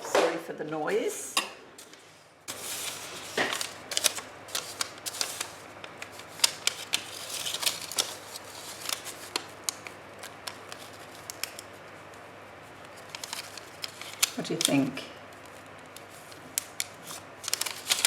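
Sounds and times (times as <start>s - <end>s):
paper rustling and crackling: 2.5s - 18.0s
paper tearing: 16.2s - 18.0s.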